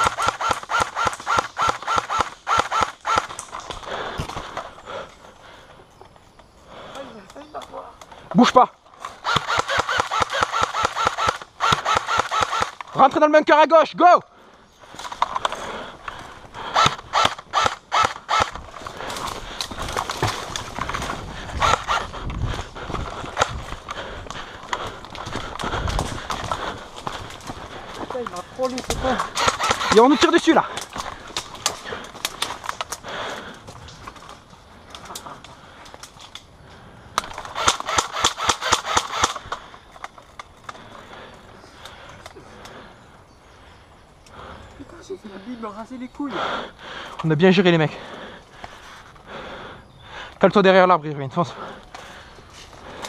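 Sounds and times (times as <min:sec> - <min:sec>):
airsoft guns firing: 0:00.0 - 0:03.6, 0:09.2 - 0:12.8, 0:16.7 - 0:18.6, 0:28.6 - 0:32.7, 0:37.4 - 0:39.6
running footsteps: 0:14.8 - 0:36.4
rattle of carried gear: 0:18.2 - 0:36.5.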